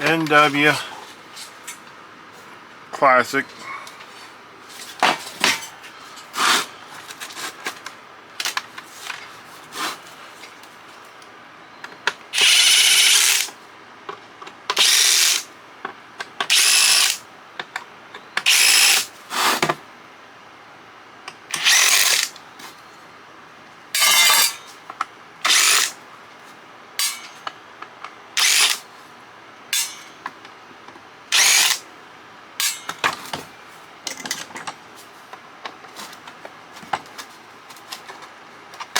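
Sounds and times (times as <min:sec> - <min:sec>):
cordless drill whirring in bursts: 0:12.4 - 0:13.5, 0:14.7 - 0:15.5, 0:16.5 - 0:17.2, 0:18.4 - 0:19.1, 0:21.5 - 0:22.4, 0:25.4 - 0:26.0, 0:28.4 - 0:28.9, 0:31.3 - 0:31.8.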